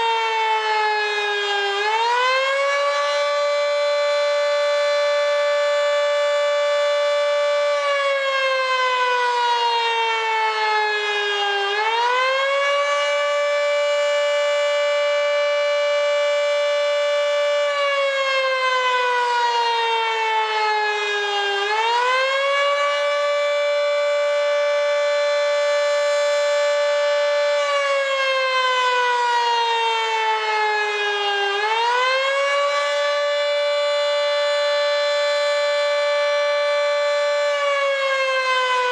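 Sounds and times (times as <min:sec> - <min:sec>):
warning siren wailing: 0:00.0 - 0:38.9.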